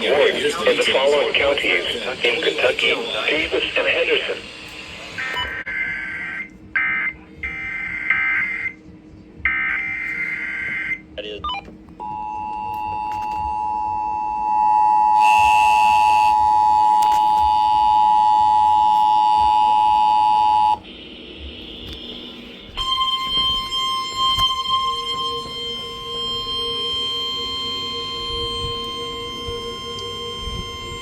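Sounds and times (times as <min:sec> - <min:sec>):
two-note alert tone: 0:22.8 - 0:31.0.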